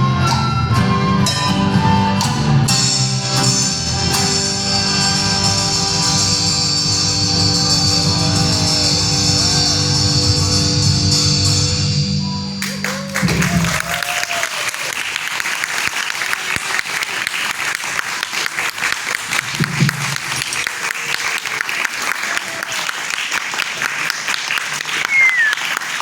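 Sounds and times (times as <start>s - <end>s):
live band playing final chord: 1.7s - 14.3s
audience applause: 12.6s - 26.0s.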